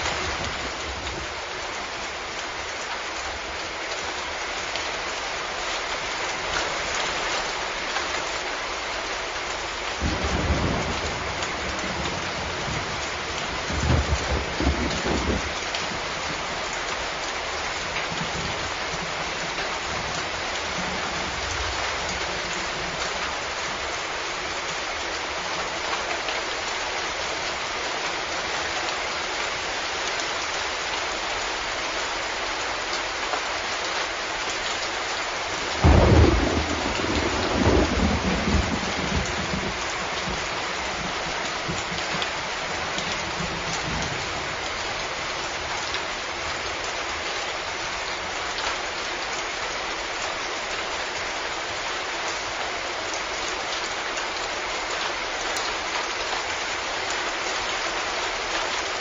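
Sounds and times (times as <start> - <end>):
steady rain falling: 0.0 - 59.0
thunderclap and rolling rumble: 10.0 - 16.7, 35.8 - 44.7.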